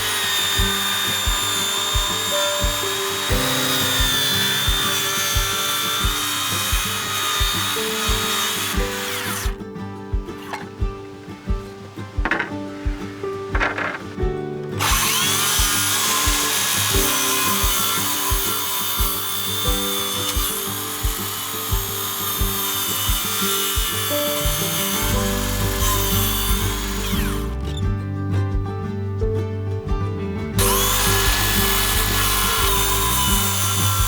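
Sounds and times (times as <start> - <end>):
electric power tool whining: 0.0 - 9.6, 12.3 - 12.6, 13.5 - 27.8, 30.6 - 34.0
background music with steady beat: 0.0 - 34.0.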